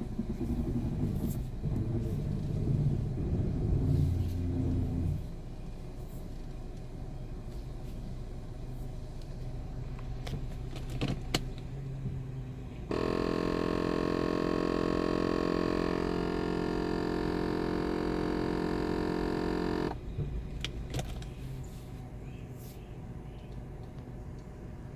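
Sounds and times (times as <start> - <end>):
steady electric buzz: 12.9 - 20.0.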